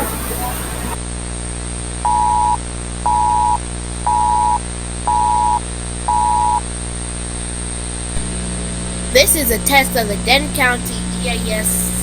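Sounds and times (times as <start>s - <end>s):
steady hiss and hum: 0.0s - 1.0s, 6.6s - 12.0s
two-tone beep: 2.1s - 6.6s.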